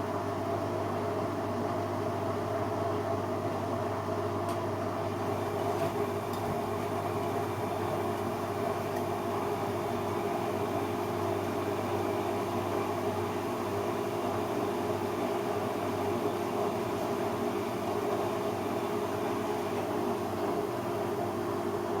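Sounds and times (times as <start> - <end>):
washing machine hum and drum: 0.0 - 22.0.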